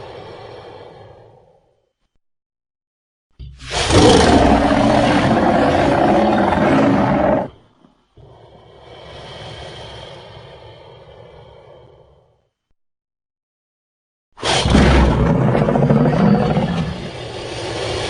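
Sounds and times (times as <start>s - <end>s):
creature roar: 3.7s - 7.6s, 14.4s - 17.2s
quieter creature call: 3.7s - 7.6s.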